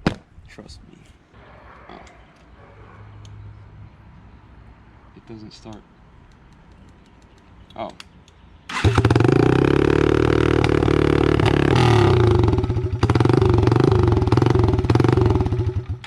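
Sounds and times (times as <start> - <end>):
loud dirt bike engine running: 8.8 - 16.0.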